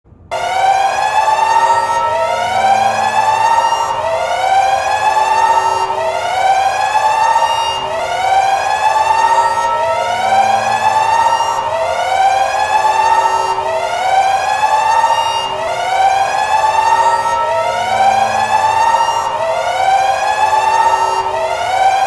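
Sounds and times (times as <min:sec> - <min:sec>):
alarm siren sweeping: 0:00.2 - 0:22.0.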